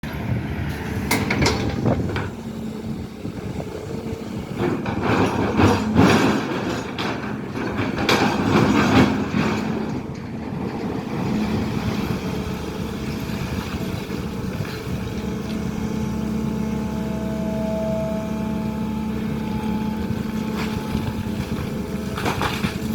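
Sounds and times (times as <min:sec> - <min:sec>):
excavator engine drone: 0:00.0 - 0:22.9
excavator bucket knocks and scrapes: 0:01.0 - 0:02.4, 0:04.3 - 0:12.2, 0:19.7 - 0:22.9.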